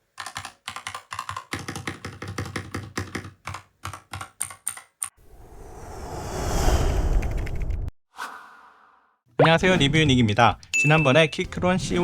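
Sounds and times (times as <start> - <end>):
mechanical keyboard keystrokes clacking: 0.2 - 5.1
rising whoosh: 5.2 - 8.4.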